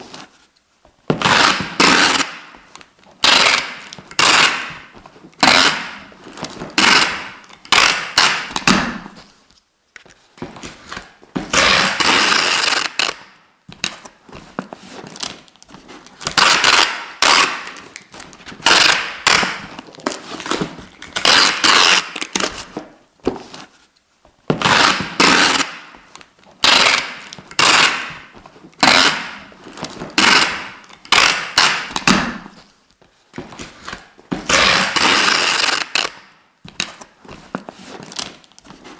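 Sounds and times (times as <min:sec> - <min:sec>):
adhesive tape ripping off roll: 0:01.2 - 0:02.5, 0:03.2 - 0:06.1, 0:06.7 - 0:09.1, 0:11.5 - 0:14.0, 0:16.2 - 0:20.5, 0:21.1 - 0:22.6, 0:24.6 - 0:25.9, 0:26.6 - 0:29.5, 0:30.1 - 0:32.6, 0:34.4 - 0:37.0.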